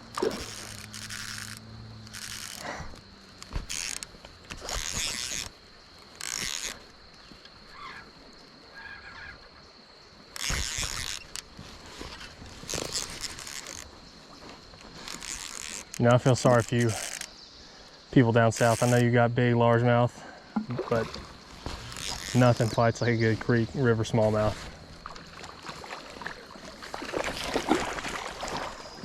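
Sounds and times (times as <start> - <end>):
fishing reel cranking: 0.0 - 6.9, 10.4 - 11.5, 12.1 - 13.9, 15.0 - 17.3, 18.5 - 19.0, 21.7 - 22.8
reel drag clicking: 0.0 - 7.6, 10.3 - 14.0, 14.6 - 17.4, 18.5 - 19.1, 20.6 - 23.0.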